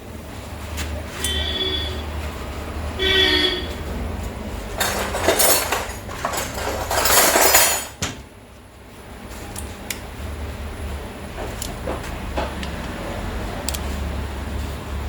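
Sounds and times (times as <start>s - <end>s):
metal tools clinking and scraping: 4.8s - 8.0s.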